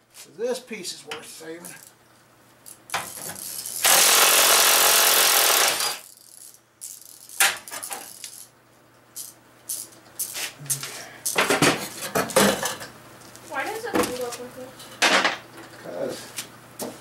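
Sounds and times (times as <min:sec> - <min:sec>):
handheld power tool running: 0:03.2 - 0:06.2.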